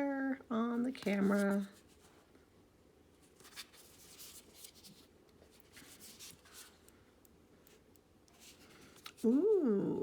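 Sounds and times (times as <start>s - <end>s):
tarot cards rustling: 0.8s - 2.1s, 3.2s - 6.8s, 8.3s - 9.4s.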